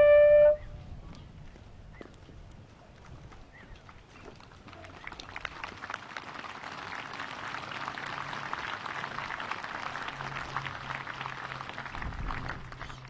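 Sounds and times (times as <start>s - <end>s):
crowd applauding: 3.7s - 13.0s.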